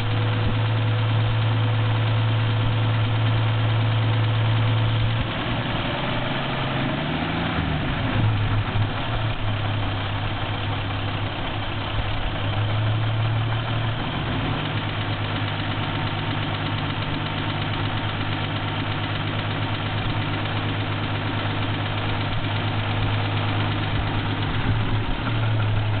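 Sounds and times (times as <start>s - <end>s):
engine idling with a knock: 14.6s - 26.0s.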